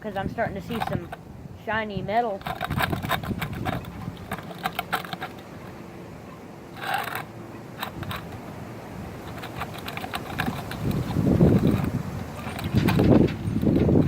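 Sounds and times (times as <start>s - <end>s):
wet towel scrubbing metal: 2.1s - 14.0s
small clicks: 2.4s - 5.8s, 6.7s - 8.5s, 9.2s - 14.0s.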